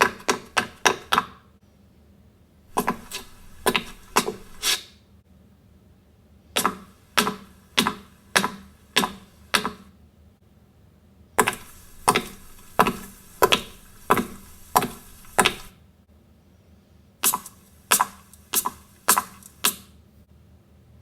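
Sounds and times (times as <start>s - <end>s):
sharp knocks: 11.4s - 15.7s.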